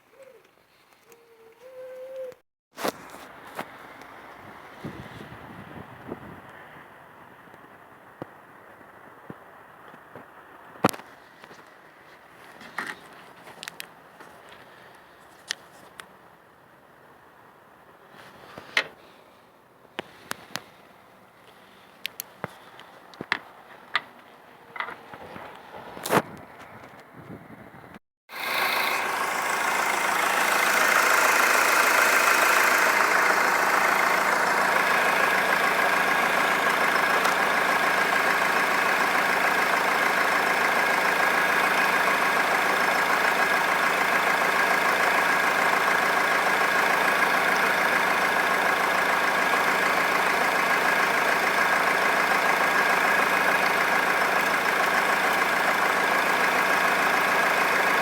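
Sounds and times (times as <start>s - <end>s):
diesel engine idling: 2.8s - 26.8s, 28.3s - 58.0s.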